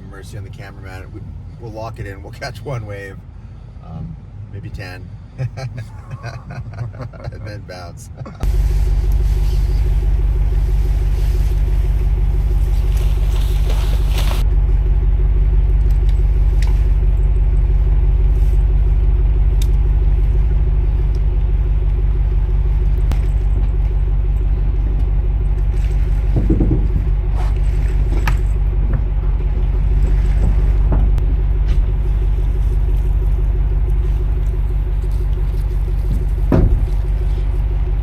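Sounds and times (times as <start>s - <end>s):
faint hum: 0.0s - 38.0s
loud low rumble: 8.4s - 38.0s.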